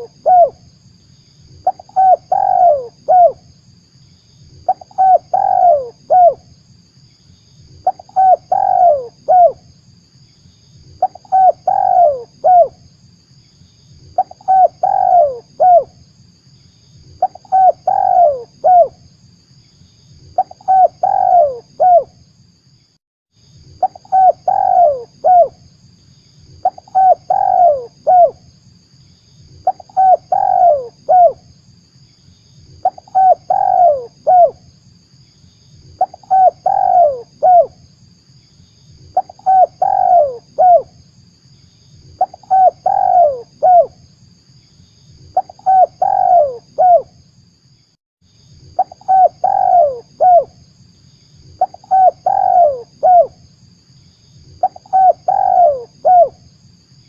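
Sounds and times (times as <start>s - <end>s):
dove cooing: 0.0s - 0.6s, 1.6s - 3.4s, 4.6s - 6.4s, 7.8s - 9.6s, 11.0s - 12.8s, 14.2s - 15.9s, 17.2s - 19.0s, 20.4s - 22.1s, 23.8s - 25.6s, 26.6s - 28.4s, 29.6s - 31.4s, 32.8s - 34.6s, 36.0s - 37.8s, 39.1s - 40.9s, 42.2s - 43.9s, 45.4s - 47.1s, 48.8s - 50.6s, 51.6s - 53.4s, 54.6s - 56.4s.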